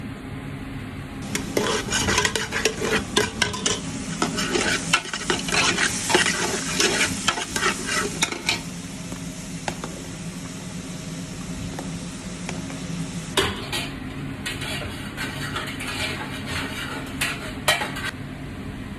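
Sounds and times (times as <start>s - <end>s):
low hum: 1.0s - 17.4s
metal utensil scraping a pan: 1.2s - 8.7s, 13.4s - 18.2s
food sizzling in a pan: 1.2s - 13.8s.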